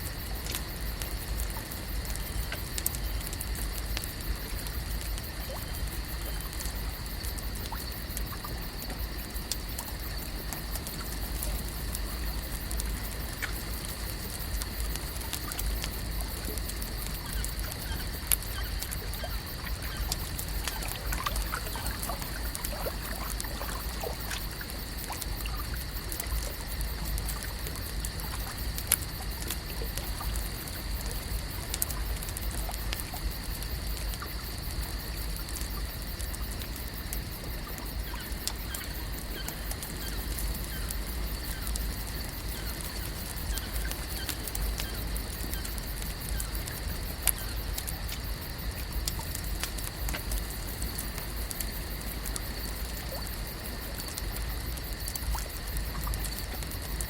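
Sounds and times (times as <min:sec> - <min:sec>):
constant high hum: 0:00.0 - 0:54.9
small ticks: 0:00.0 - 0:57.0
water trickling and lapping: 0:00.1 - 0:57.0.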